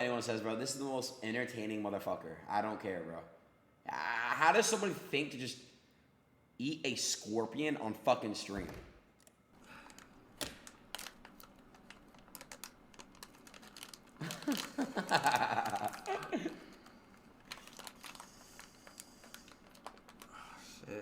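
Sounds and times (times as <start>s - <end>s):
crinkling: 9.2s - 20.8s
strained voice-like sound: 20.6s - 21.0s.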